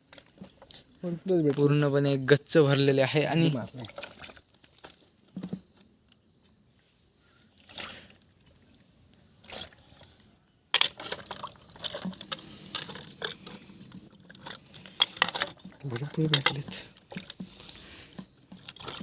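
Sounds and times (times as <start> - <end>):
water trickling: 0.0 - 5.2, 11.0 - 19.0
water pouring and splashing: 2.8 - 5.5, 7.5 - 19.0.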